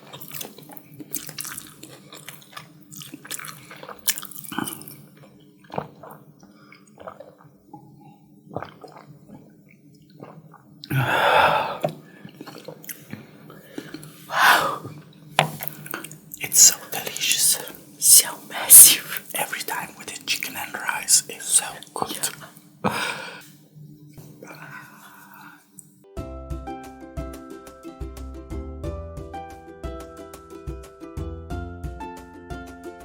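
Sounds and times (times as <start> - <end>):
wet chewing and mouth clicks: 0.0 - 11.0, 11.7 - 23.4.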